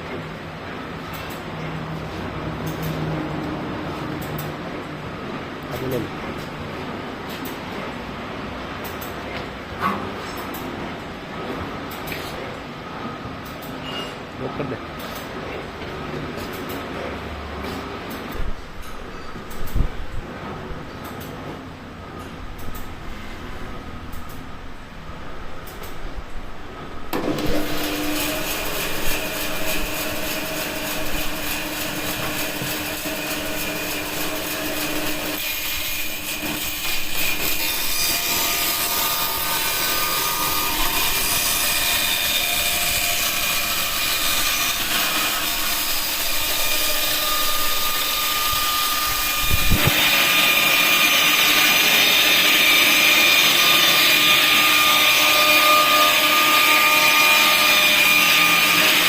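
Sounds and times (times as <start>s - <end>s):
band saw cutting wood: 27.2s - 59.0s.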